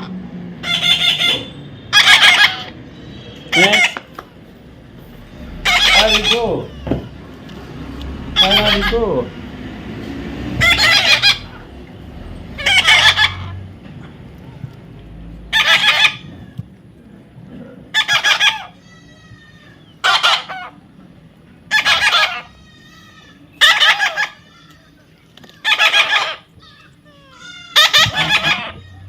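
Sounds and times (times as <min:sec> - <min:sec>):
parrot squawking: 0:00.0 - 0:04.2, 0:05.0 - 0:07.4, 0:08.2 - 0:09.3, 0:10.6 - 0:13.7, 0:15.5 - 0:16.5, 0:17.9 - 0:20.8, 0:21.7 - 0:25.0, 0:25.6 - 0:29.0.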